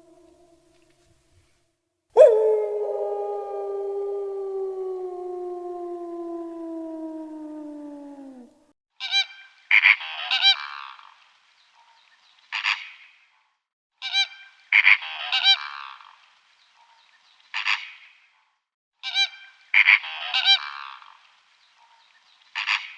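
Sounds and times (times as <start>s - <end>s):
wolf howling: 0.0s - 0.7s, 2.2s - 8.7s.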